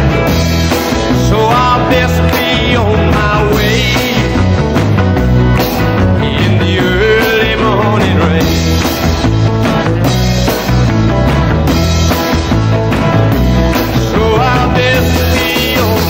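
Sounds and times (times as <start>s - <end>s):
rockabilly band playing: 0.0s - 16.0s
sliding lead guitar lines: 0.0s - 16.0s.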